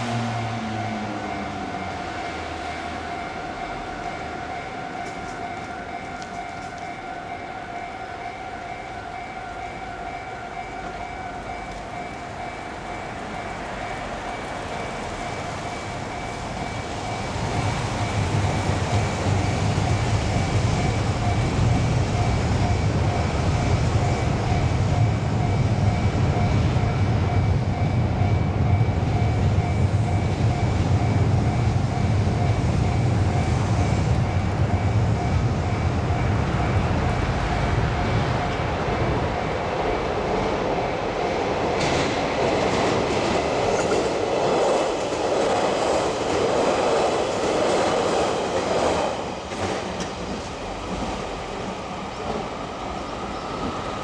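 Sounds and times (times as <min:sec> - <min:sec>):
level-crossing bell ringing: 0:00.0 - 0:41.9
train rumble: 0:00.0 - 0:54.0.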